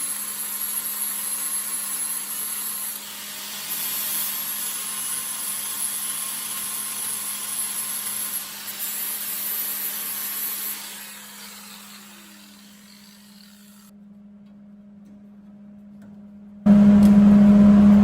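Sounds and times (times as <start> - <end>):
power grinder on sheet metal: 0.0 - 13.9.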